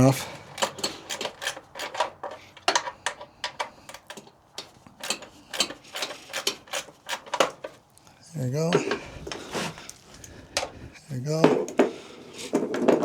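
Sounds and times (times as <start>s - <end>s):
ratchet wrench clicking: 0.0s - 7.7s.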